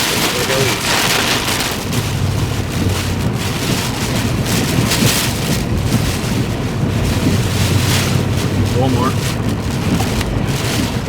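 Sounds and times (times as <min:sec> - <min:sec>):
engine and road drone: 0:00.0 - 0:11.0
wind and rain on vehicle: 0:00.0 - 0:11.0.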